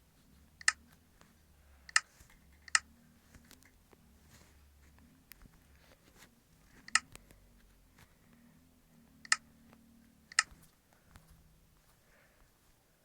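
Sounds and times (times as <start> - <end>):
faint clicking: 9.2 - 11.3.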